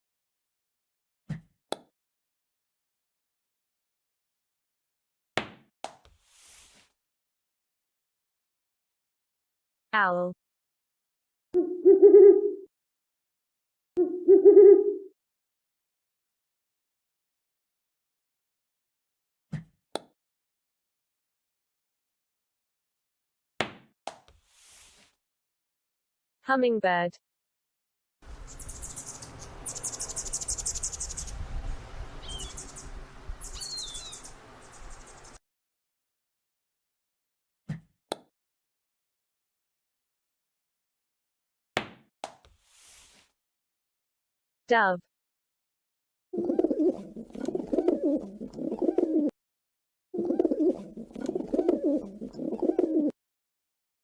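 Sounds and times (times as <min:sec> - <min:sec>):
dove cooing: 0:11.6 - 0:12.7, 0:14.0 - 0:15.1, 0:32.2 - 0:35.3, 0:46.4 - 0:49.3, 0:50.2 - 0:53.2
hummingbird twittering: 0:28.3 - 0:35.4.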